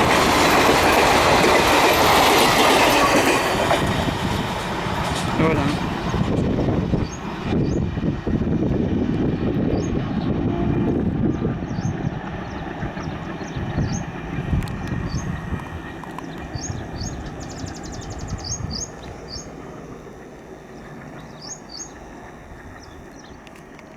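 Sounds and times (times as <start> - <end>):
train rumbling on rails: 0.0 - 23.9
small birds chirping: 11.7 - 23.5.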